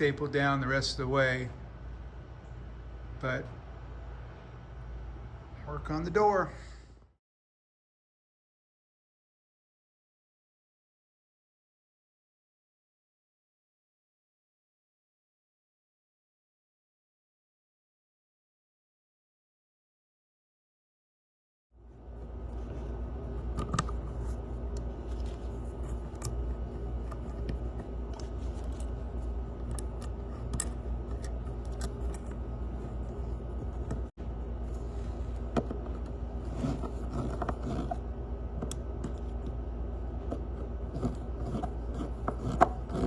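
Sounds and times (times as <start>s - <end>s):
steady low hum: 0.0s - 7.2s, 21.8s - 43.0s
rubbing sounds: 21.8s - 35.4s, 36.2s - 38.1s.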